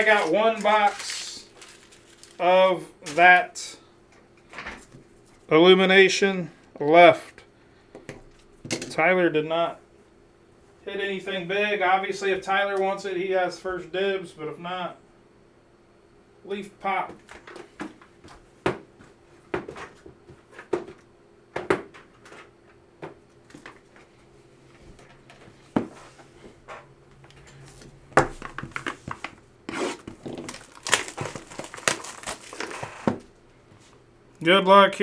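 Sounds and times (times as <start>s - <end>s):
wrappers crinkling and tearing: 0.0s - 3.4s, 29.8s - 33.2s.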